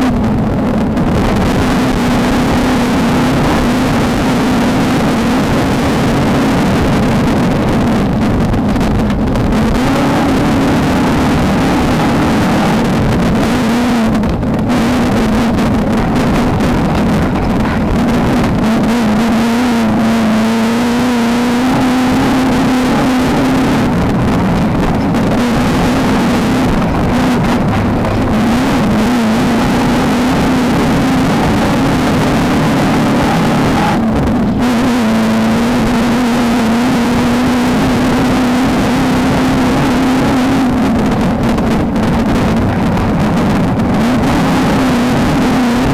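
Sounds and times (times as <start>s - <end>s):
race car engine running hard: 0.0s - 45.9s
rattling road noise: 0.0s - 45.9s.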